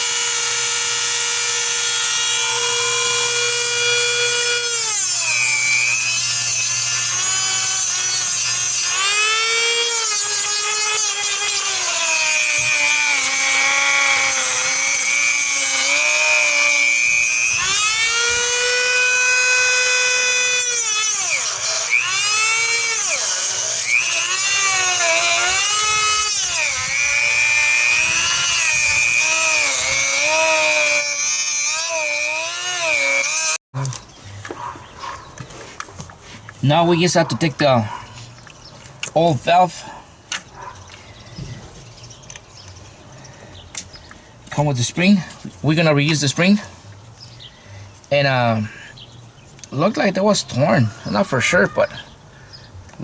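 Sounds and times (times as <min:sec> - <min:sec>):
power tool cutting plastic: 0:00.0 - 0:34.0.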